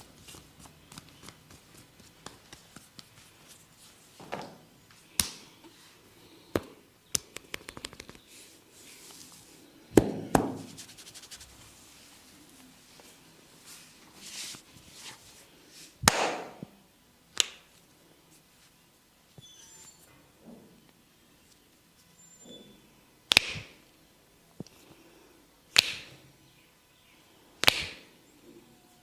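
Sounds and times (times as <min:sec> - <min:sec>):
massage slaps and cracks: 0:00.2 - 0:03.6, 0:04.3 - 0:05.5, 0:06.5 - 0:08.3, 0:09.9 - 0:11.3, 0:16.0 - 0:16.7, 0:17.3 - 0:17.8, 0:23.3 - 0:23.8, 0:25.7 - 0:26.2, 0:27.6 - 0:28.1.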